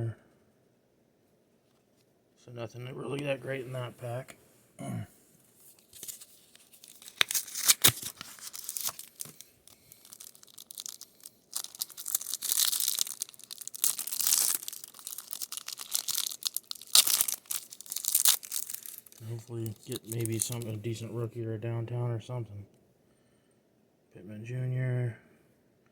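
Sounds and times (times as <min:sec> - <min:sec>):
foil wrapper tearing and crinkling: 0:05.8 - 0:20.8.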